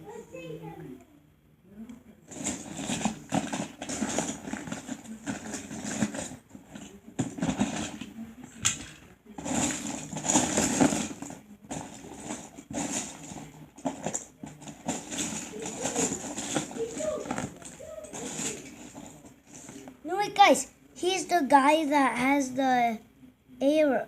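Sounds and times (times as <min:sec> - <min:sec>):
plastic bricks clattering: 0:02.3 - 0:19.9.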